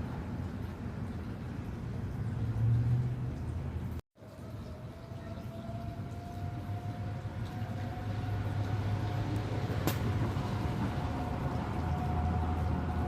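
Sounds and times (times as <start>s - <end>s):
distant warning siren steady tone: 4.2s - 13.0s.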